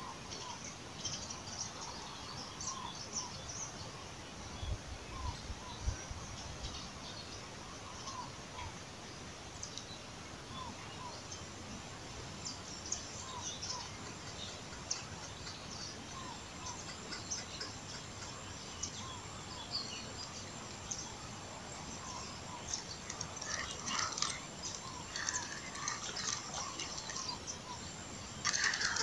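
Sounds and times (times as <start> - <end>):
outdoor background noise: 0.0 - 29.0
bird rising call: 22.0 - 27.8, 28.4 - 29.0.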